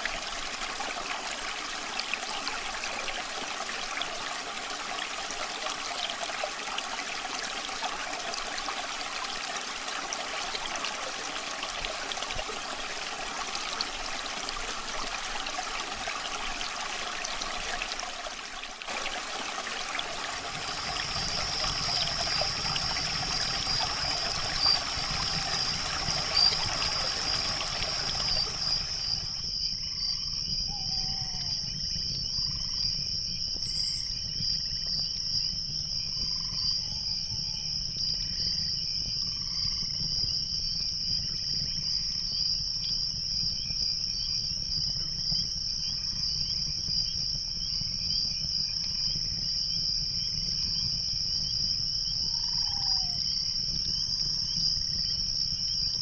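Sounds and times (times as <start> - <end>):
stream rushing water: 0.0 - 29.4
crickets chirping: 0.1 - 56.0
sharp insect chirp: 20.5 - 29.5.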